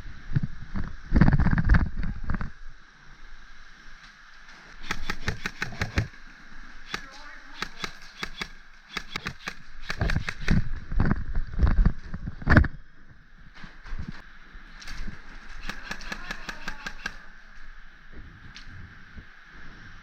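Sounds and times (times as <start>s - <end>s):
airsoft guns firing: 4.8s - 6.2s, 6.8s - 10.7s, 15.6s - 17.4s
loud crack: 4.8s - 6.2s, 6.8s - 10.8s, 14.8s - 17.5s.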